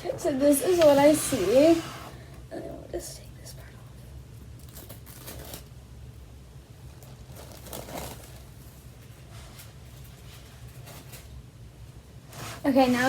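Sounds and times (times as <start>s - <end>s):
plastic wrapping crinkling: 4.5s - 5.8s, 6.8s - 11.4s.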